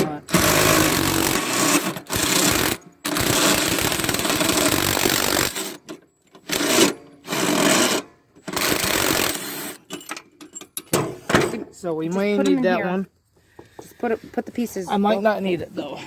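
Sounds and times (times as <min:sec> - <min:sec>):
impact wrench hammering on bolt: 0:00.0 - 0:05.8.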